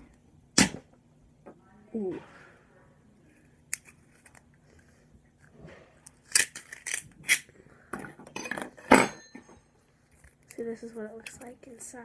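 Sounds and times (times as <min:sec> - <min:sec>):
plastic snips and cracks: 0:06.1 - 0:07.5.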